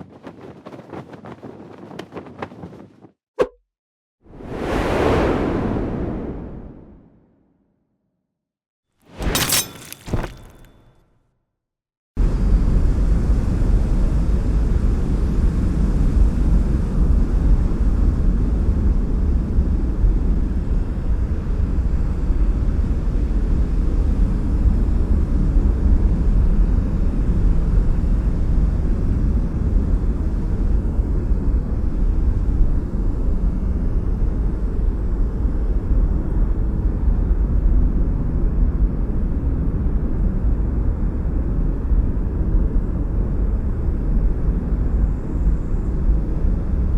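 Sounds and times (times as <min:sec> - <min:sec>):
rushing air with deep rumble: 0:04.2 - 0:07.5.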